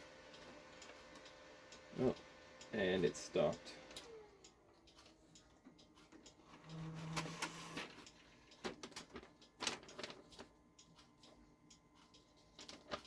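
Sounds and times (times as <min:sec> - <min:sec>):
printer motor humming: 0:00.0 - 0:04.5
sharp printer clicks: 0:06.6 - 0:10.5.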